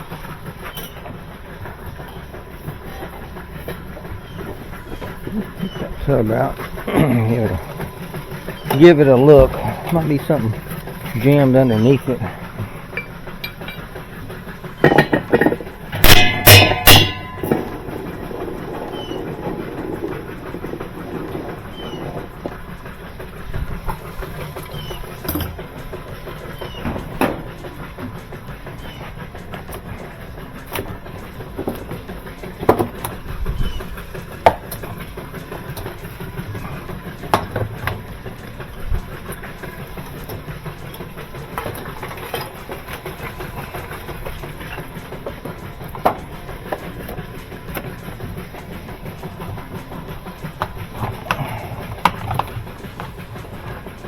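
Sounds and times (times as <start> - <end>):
steady background rumble: 0.0 - 54.0
clanks and knocks on washer: 14.8 - 17.7.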